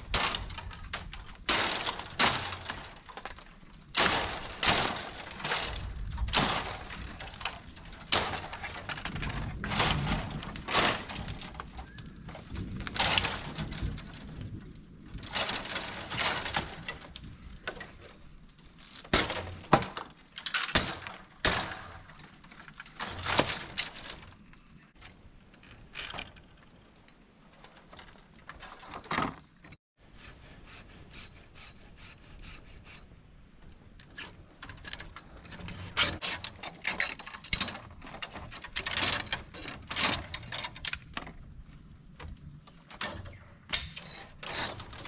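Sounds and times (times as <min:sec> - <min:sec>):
dry bamboo crackling and snapping: 0:00.0 - 0:24.6, 0:33.6 - 0:41.3, 0:42.7 - 0:45.0.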